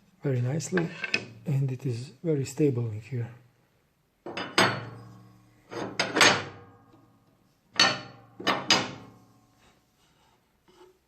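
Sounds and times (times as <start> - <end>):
metal plate clunking on saw table: 4.3 - 5.0, 5.8 - 6.6, 7.8 - 9.1.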